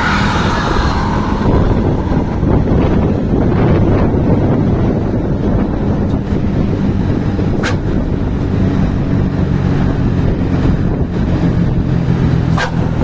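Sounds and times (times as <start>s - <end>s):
diesel engine droning: 0.0s - 13.0s.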